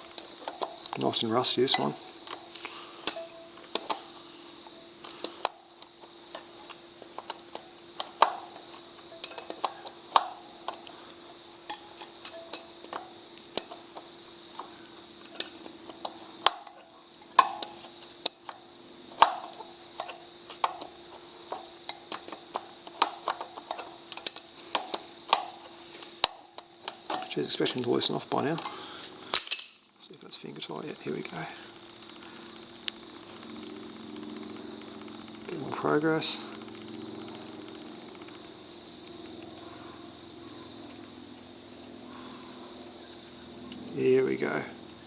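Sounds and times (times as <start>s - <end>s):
spanner clicking on metal: 0.0s - 30.0s.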